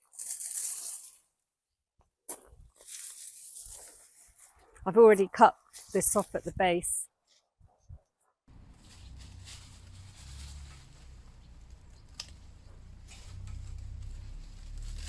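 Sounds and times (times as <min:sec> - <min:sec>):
stems and leaves rustling: 0:00.0 - 0:01.2, 0:02.3 - 0:06.6, 0:08.5 - 0:15.0.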